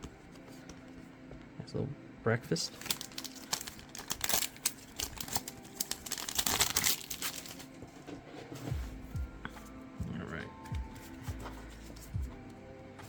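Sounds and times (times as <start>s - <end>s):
foil wrapper crinkling: 2.6s - 7.8s.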